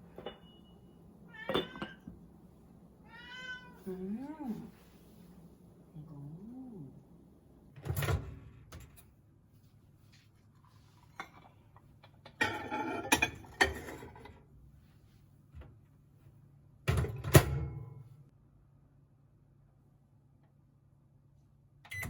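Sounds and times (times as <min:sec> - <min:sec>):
faint steady hum: 0:00.0 - 0:22.0.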